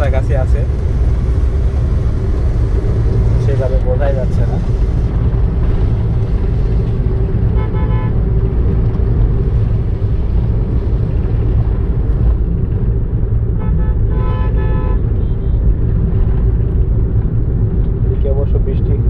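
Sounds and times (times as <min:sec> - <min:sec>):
car road and engine rumble: 0:00.0 - 0:19.0
car horn toots: 0:07.4 - 0:08.4, 0:13.6 - 0:15.6.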